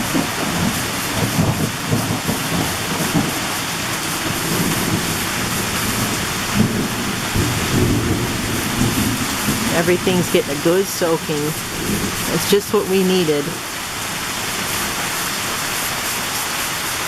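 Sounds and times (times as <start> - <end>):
heavy rain splashing: 0.0 - 17.0.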